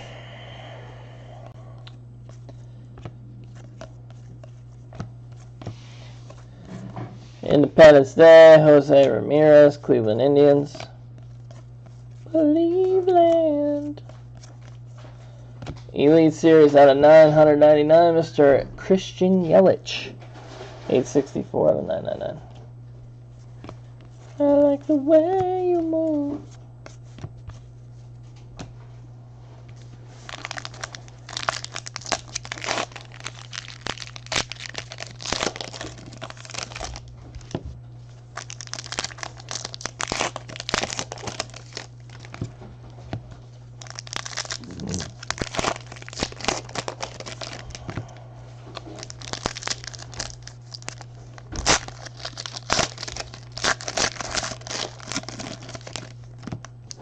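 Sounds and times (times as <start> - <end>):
wrappers tearing and crinkling: 30.2 - 37.6, 38.2 - 42.5, 43.8 - 47.9, 48.7 - 57.0.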